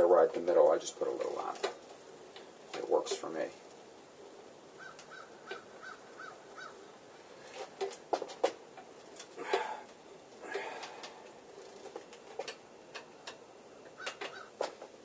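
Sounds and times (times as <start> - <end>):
faint bird calls: 4.2 - 7.5, 13.9 - 14.9.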